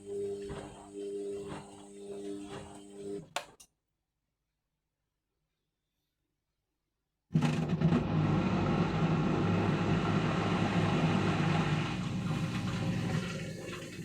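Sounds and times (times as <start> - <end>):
washing machine humming: 7.7 - 14.0.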